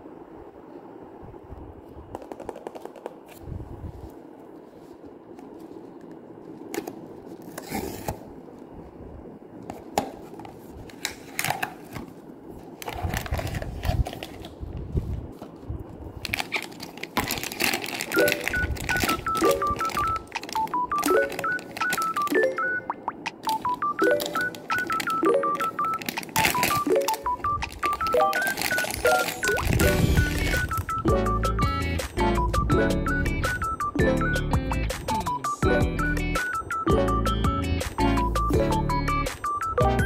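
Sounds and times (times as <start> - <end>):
packaging crinkling and rustling: 5.3 - 8.3, 9.8 - 22.4, 23.4 - 30.9
beeping tune: 18.1 - 40.0.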